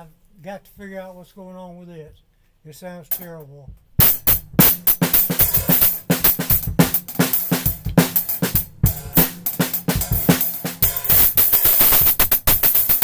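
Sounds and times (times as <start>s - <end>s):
drum kit playing: 3.1s - 13.0s
distorted hi-hat: 4.0s - 13.0s.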